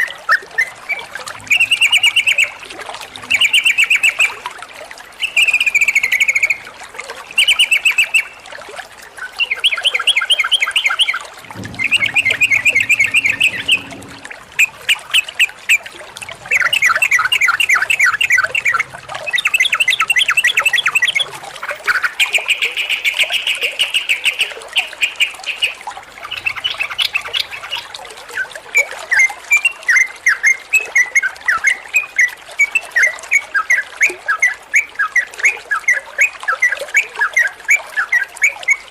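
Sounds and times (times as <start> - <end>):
bird chattering song: 1.5 - 2.6, 7.4 - 8.4, 9.4 - 14.0, 16.5 - 21.3.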